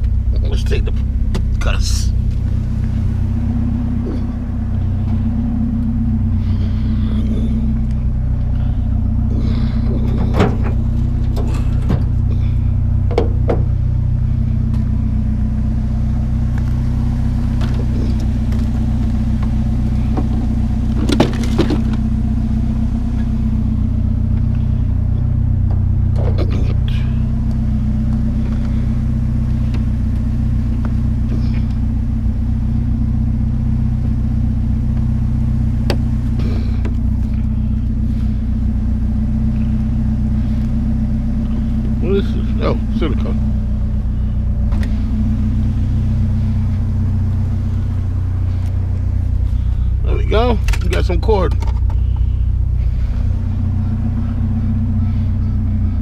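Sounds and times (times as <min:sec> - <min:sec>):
vehicle engine idling: 0:00.0 - 0:56.0
knocks and clanks: 0:09.9 - 0:12.4, 0:13.0 - 0:13.8, 0:21.0 - 0:22.0.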